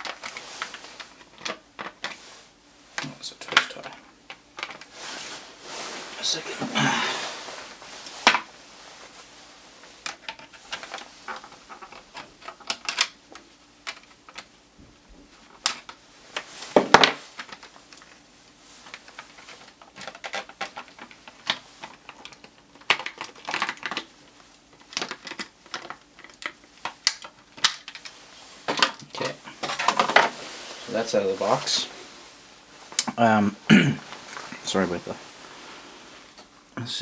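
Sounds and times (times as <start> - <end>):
packaging clicks and crackles: 18.8 - 30.2.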